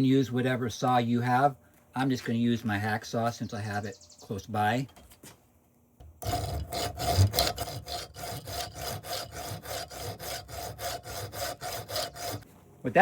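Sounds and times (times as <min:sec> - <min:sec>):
hacksaw cutting metal: 0:06.2 - 0:12.4.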